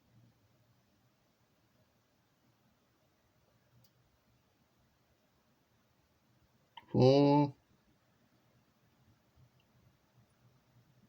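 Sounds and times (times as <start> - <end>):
person speaking: 6.8 - 7.6.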